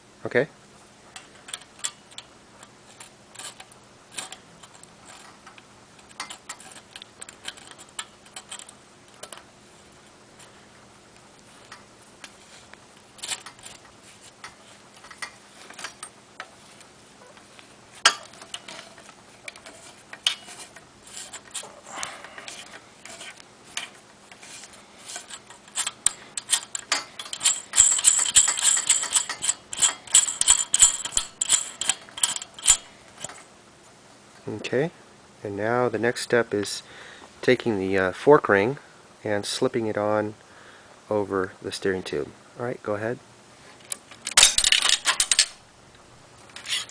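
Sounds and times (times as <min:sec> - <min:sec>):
small metal hardware clicking: 0:01.2 - 0:09.5, 0:13.2 - 0:16.5, 0:25.1 - 0:33.4, 0:43.8 - 0:45.6.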